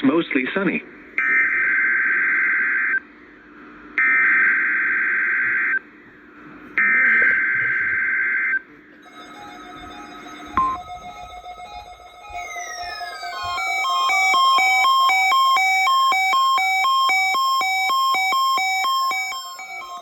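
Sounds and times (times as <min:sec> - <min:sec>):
warbling data tones from radio: 0:09.1 - 0:15.5.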